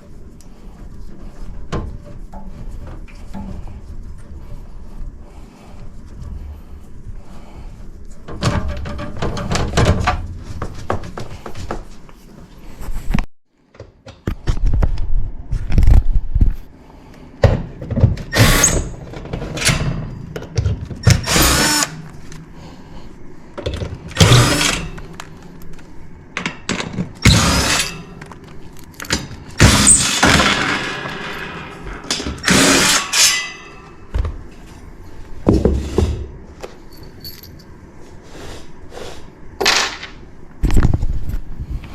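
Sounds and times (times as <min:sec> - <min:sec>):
power drill running: 0:21.1 - 0:22.0, 0:24.2 - 0:25.0, 0:27.2 - 0:28.0, 0:29.6 - 0:31.1, 0:32.4 - 0:33.4.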